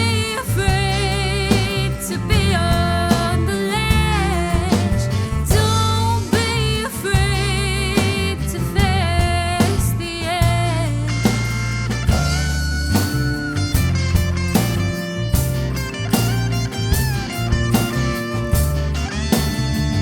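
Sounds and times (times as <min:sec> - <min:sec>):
bass and drums: 0:00.0 - 0:20.0
electric guitar solo: 0:11.0 - 0:20.0.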